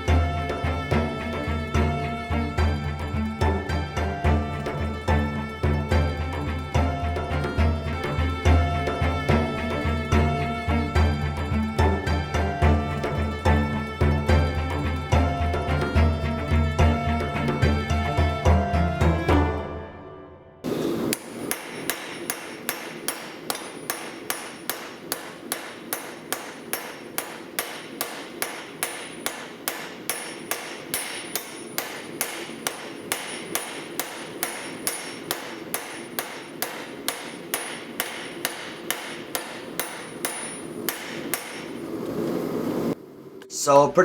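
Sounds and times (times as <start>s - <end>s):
hammer striking steel on anvil: 21.1s - 41.9s.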